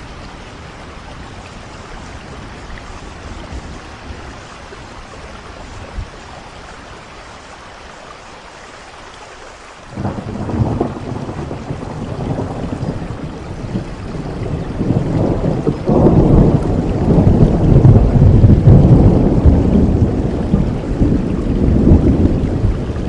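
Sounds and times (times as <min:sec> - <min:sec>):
steady rain: 0:00.0 - 0:23.0
thunder rumbling: 0:09.9 - 0:23.0.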